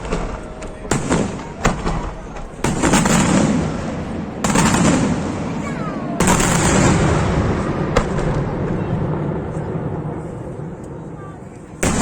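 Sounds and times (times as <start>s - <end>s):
firework sharp crack: 0.0s - 8.8s.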